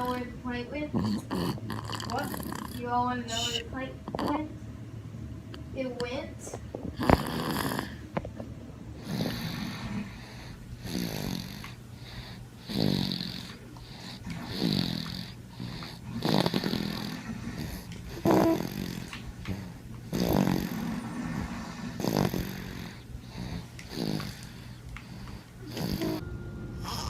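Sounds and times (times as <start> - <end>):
person snoring: 1.0 - 3.6, 7.0 - 8.0, 9.0 - 11.7, 12.6 - 24.7, 25.6 - 26.2.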